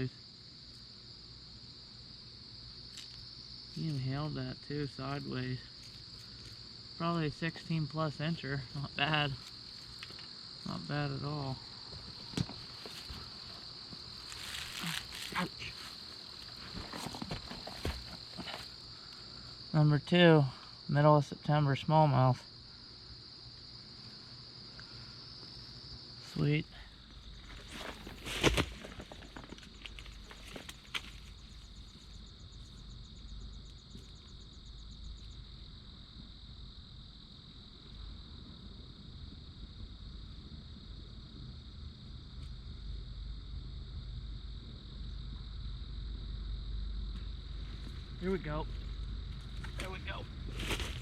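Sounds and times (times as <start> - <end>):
crickets trilling: 0.0 - 51.0
low outdoor rumble: 21.8 - 51.0.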